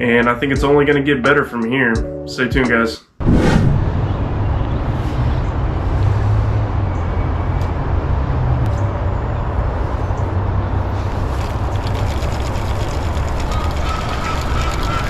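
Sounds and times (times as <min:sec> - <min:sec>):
low rumble: 0:03.2 - 0:05.3.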